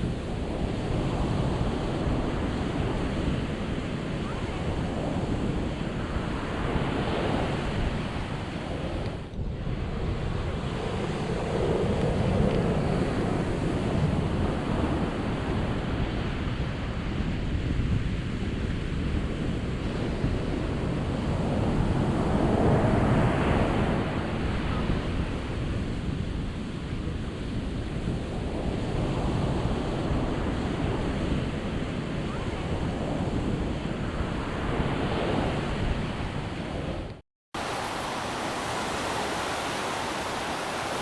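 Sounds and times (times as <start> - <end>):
waves breaking on shore: 37.6 - 41.0.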